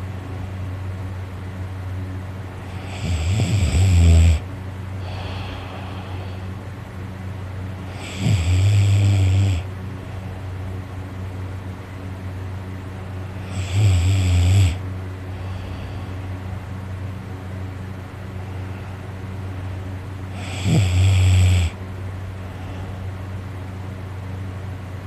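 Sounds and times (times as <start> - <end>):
man snoring loudly: 2.7 - 4.4, 7.8 - 9.7, 13.4 - 14.8, 20.3 - 21.8
soft breath out: 5.0 - 6.6, 15.3 - 16.3.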